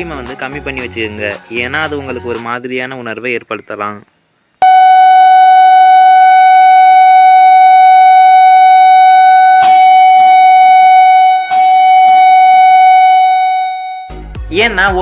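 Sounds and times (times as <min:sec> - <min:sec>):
steady tone from speaker: 0:04.6 - 0:14.2.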